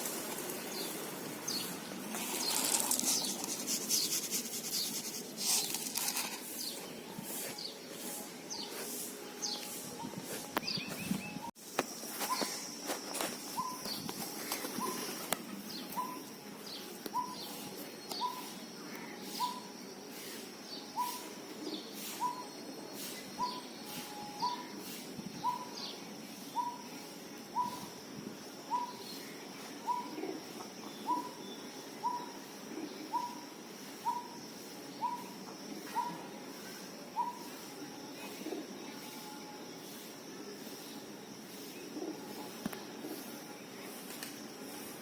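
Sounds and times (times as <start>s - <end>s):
birds chirping: 0.0s - 19.8s.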